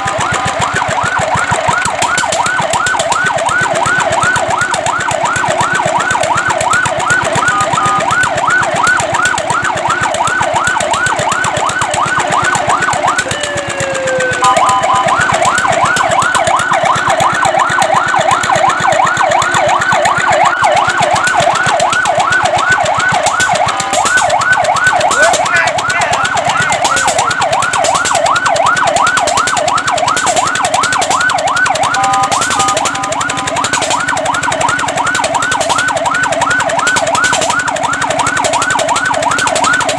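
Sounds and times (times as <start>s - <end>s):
fire truck siren yelping: 0.0s - 39.9s.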